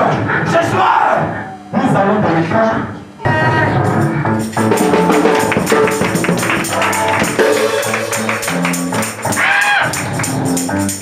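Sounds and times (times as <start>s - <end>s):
sustained bass notes and chords: 1.2s - 11.0s
tambourine shaking: 4.0s - 11.0s.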